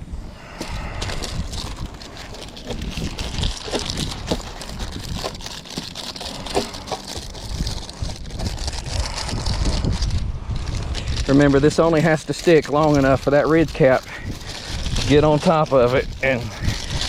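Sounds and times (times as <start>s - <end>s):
wind rumbling on microphone: 0.0s - 17.0s
materials rustling and knocking: 0.5s - 9.2s.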